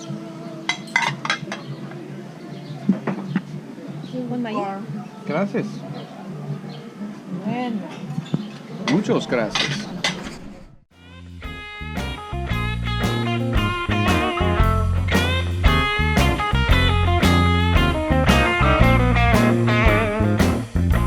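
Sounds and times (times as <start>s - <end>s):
blues-rock music with guitar: 11.1s - 21.0s.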